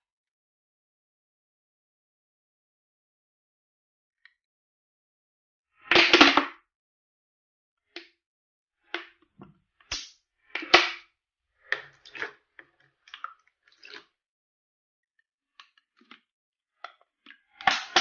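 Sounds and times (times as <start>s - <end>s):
wet slime squelches: 11.6s - 14.2s.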